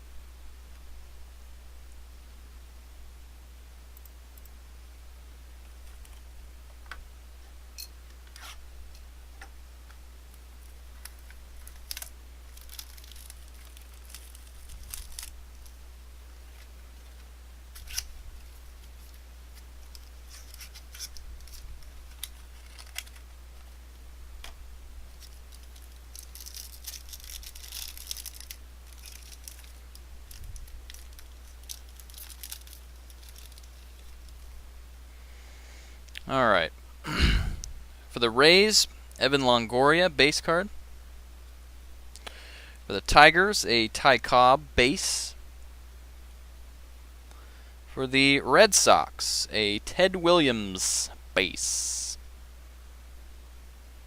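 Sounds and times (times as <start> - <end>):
steady low hum: 0.0 - 54.0
card packs crinkling and tearing: 11.0 - 15.8, 16.5 - 23.4, 25.1 - 34.4.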